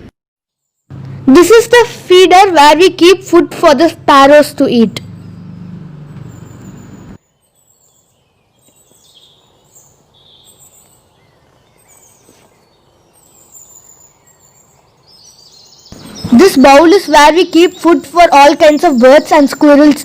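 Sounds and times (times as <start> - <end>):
sparrows chirping: 0.6 - 20.0.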